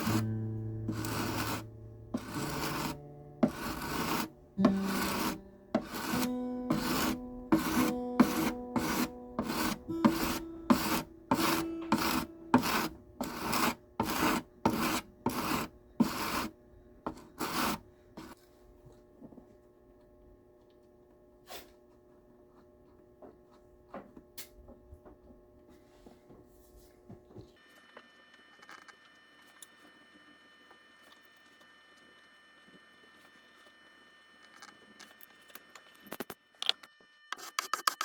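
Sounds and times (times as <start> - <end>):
acoustic guitar strumming: 0.0 - 15.4.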